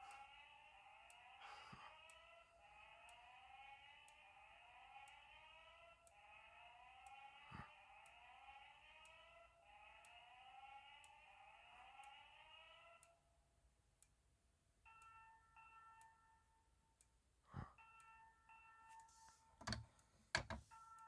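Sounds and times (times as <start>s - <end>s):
fire alarm sweep tone: 0.0s - 13.3s.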